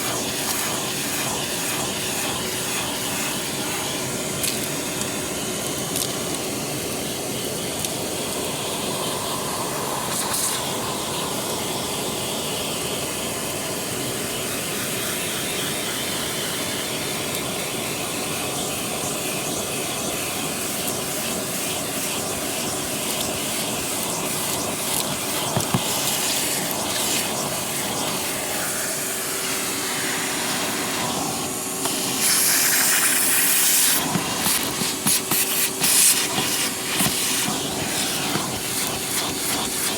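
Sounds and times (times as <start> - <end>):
vacuum cleaner running: 0.0 - 39.9
grit crackling into vacuum nozzle: 31.0 - 39.9.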